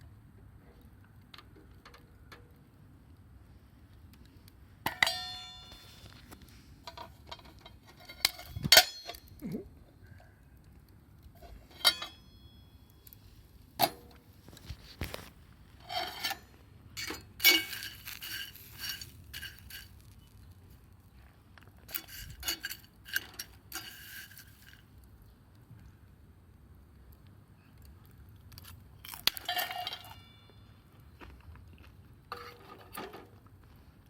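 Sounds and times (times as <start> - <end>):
small hard objects clinking: 4.9 - 9.6, 14.4 - 25.0, 28.6 - 31.3.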